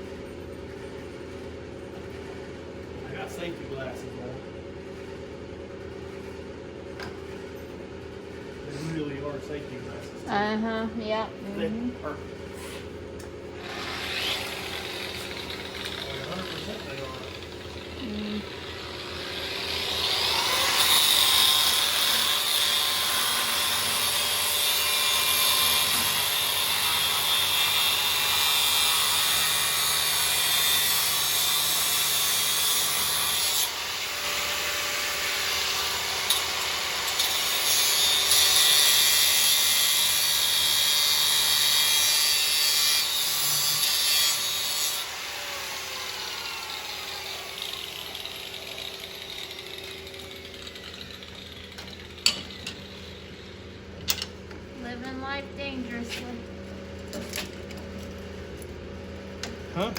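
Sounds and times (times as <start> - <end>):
angle grinder cutting: 13.6 - 54.3.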